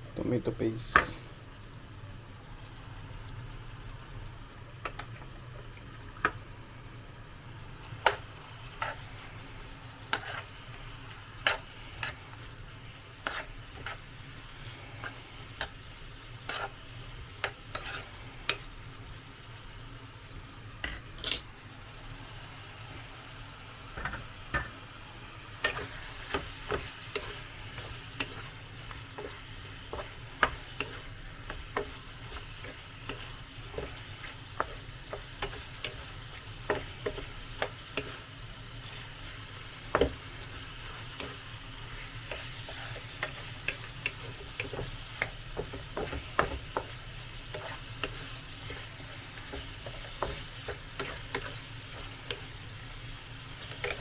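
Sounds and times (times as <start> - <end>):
food sizzling in a pan: 0.0 - 54.0
spoon scraping a pan: 8.0 - 9.3, 10.0 - 10.8, 11.4 - 14.1, 14.7 - 18.6, 25.6 - 39.1, 40.8 - 54.0.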